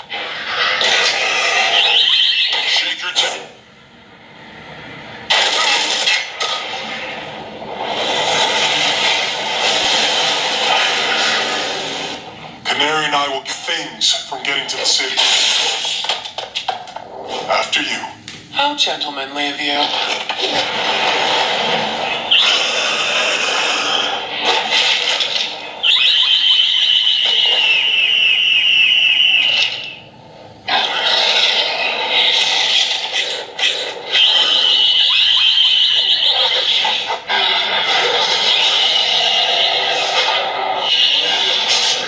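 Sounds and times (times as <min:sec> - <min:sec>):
harsh noisy rush: 0:00.0 - 0:14.0, 0:19.5 - 0:42.0
high screech: 0:19.8 - 0:30.1, 0:30.7 - 0:42.0.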